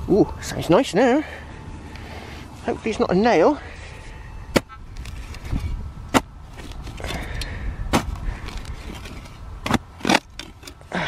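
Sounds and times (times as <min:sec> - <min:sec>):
low wind rumble: 0:00.0 - 0:11.0.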